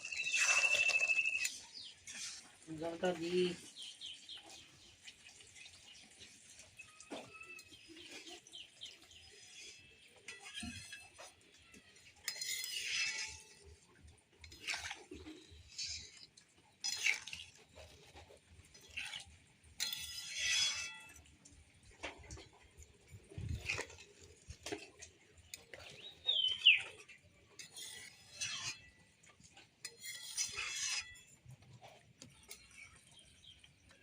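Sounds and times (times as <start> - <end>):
metal utensils scraping a pot: 0.0 - 34.0.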